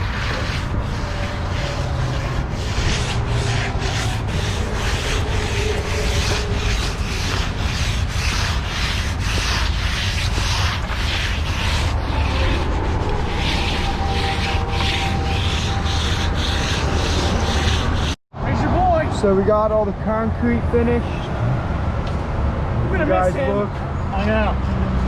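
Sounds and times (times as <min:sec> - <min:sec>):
hand tool scraping fresh concrete: 0:00.0 - 0:18.2.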